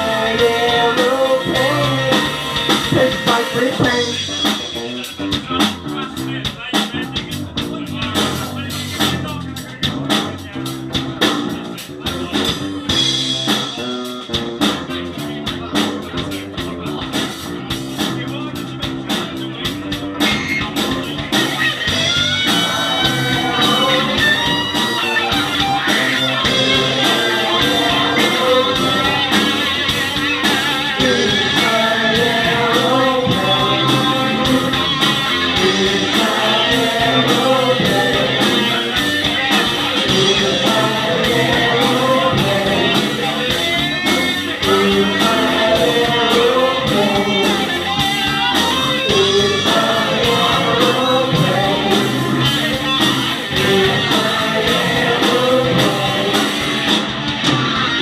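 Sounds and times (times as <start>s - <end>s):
electric guitar: 0.0s - 6.0s, 18.8s - 58.0s
steady drum beat: 0.0s - 58.0s.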